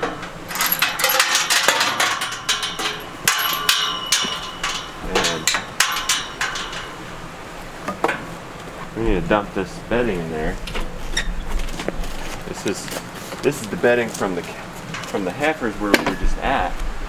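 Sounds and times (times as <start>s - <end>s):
metal gate clanking and rattling: 0.0s - 9.4s, 10.0s - 16.7s.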